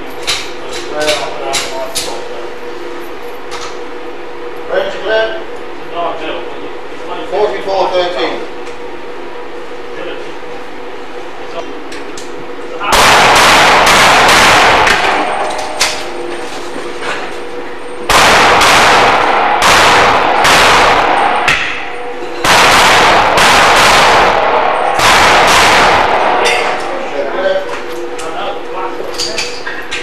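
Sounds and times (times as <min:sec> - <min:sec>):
rapid pistol fire: 0:12.9 - 0:15.5, 0:18.1 - 0:26.9.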